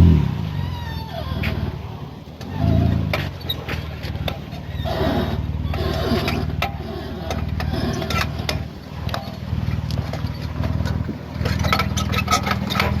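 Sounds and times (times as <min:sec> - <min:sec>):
car engine running: 0:00.0 - 0:13.0
short clunks and clicks: 0:02.4 - 0:04.7.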